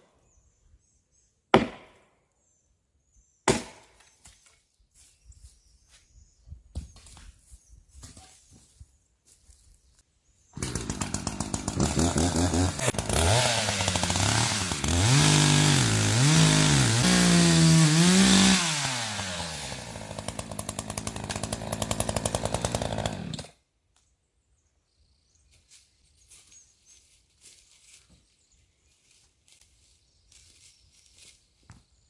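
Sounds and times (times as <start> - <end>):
chainsaw engine revving: 10.6 - 23.6.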